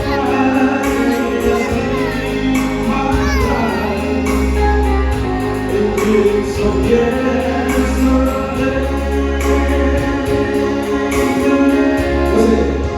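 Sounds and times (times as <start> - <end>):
backing music with bass: 0.0 - 12.9
person singing: 0.0 - 12.9.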